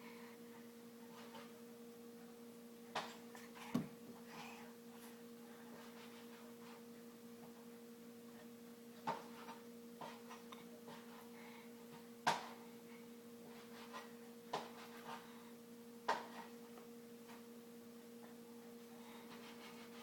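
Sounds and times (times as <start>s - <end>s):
low electrical hum: 0.0s - 20.0s
dull thump: 3.7s - 4.0s.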